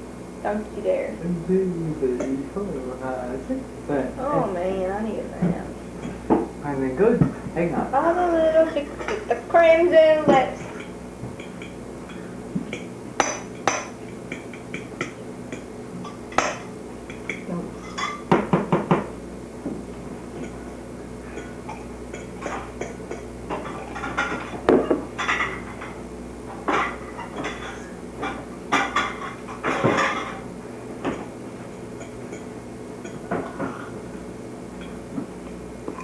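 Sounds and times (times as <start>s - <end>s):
dishes and cutlery clinking: 10.7s - 18.3s, 26.6s - 30.4s.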